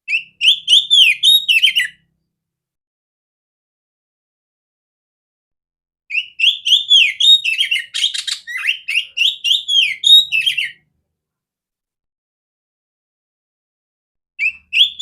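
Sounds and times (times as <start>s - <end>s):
bird singing whistled notes: 0.1s - 2.0s, 6.1s - 10.8s, 14.4s - 15.0s.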